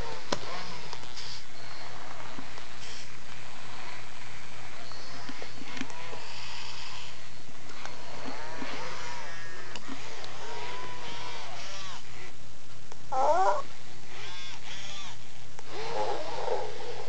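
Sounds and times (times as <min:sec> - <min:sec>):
robot toy motors whirring: 0:00.1 - 0:04.0, 0:04.6 - 0:12.3, 0:13.1 - 0:17.0
warbly electronic calls: 0:13.1 - 0:13.7.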